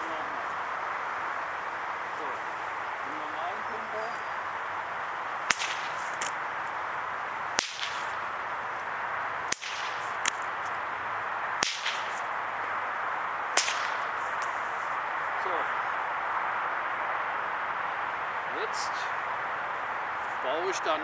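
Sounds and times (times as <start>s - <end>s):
bullwhip cracking: 5.3s - 15.1s.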